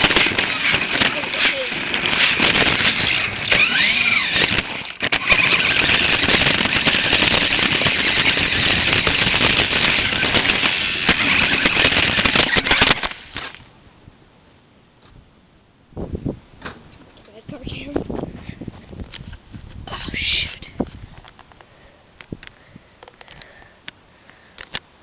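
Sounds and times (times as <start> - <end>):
electric motor whine: 0.0 - 13.6
wheels rattling over ground: 0.0 - 13.7.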